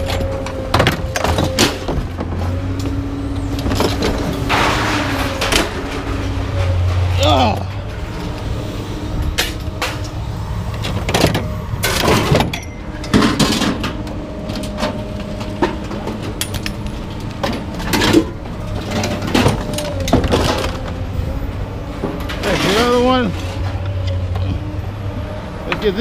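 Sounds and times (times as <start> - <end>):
low engine hum: 0.0 - 26.0
scrap metal clanking: 3.6 - 8.4, 10.8 - 21.1, 22.0 - 24.5.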